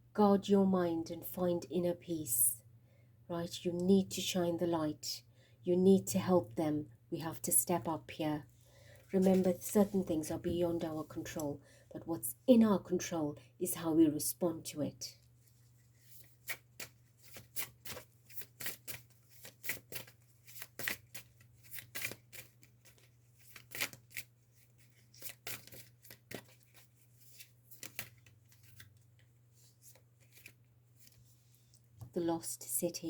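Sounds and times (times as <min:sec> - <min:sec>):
cards being shuffled: 0:15.4 - 0:31.8.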